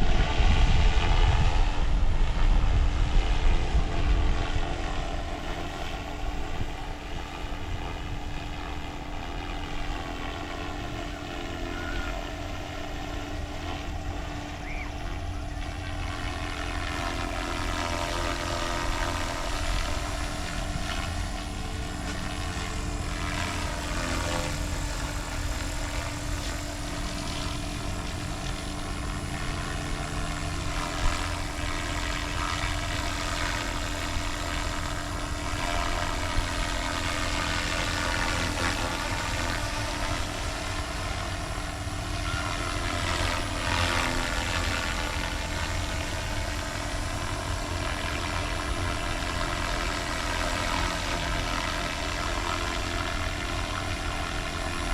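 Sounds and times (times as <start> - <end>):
helicopter droning: 0.0 - 54.9.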